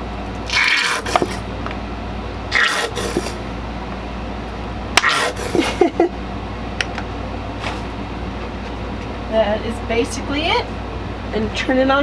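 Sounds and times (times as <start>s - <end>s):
steady background hum: 0.0s - 12.0s
sauce squirting from squeeze bottle: 2.5s - 3.4s.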